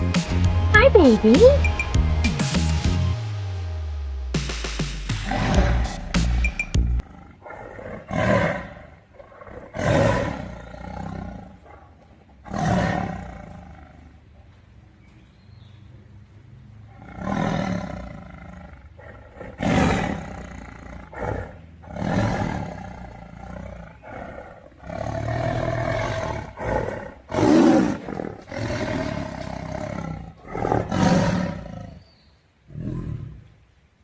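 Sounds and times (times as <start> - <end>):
big cat roaring: 7.0 - 14.3, 16.8 - 32.0, 32.7 - 33.6.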